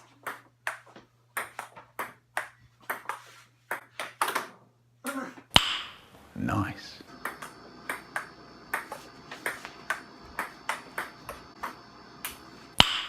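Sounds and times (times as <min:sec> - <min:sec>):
table tennis ball clicking: 0:07.2 - 0:13.0.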